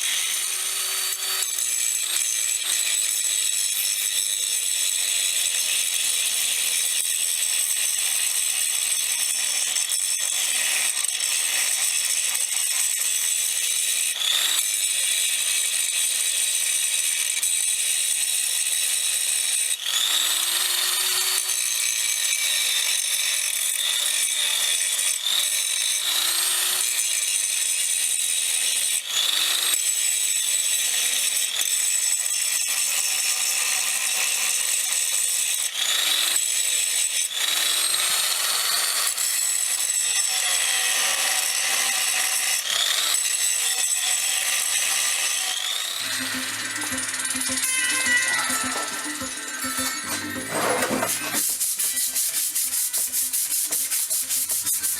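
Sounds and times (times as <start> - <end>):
power tool whining: 0.0 - 27.2, 39.8 - 54.9.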